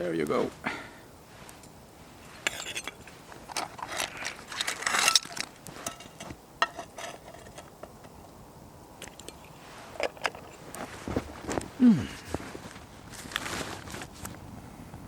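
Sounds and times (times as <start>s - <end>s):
cookware clinking and rustling: 2.4s - 8.0s.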